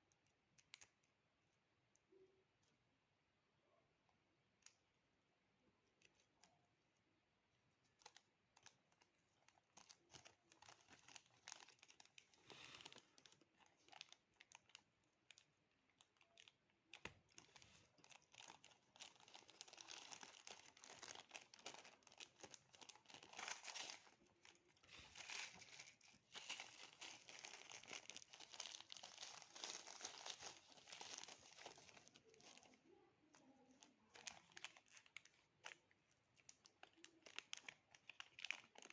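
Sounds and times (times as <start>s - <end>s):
packaging crinkling and tearing: 7.9s - 38.9s.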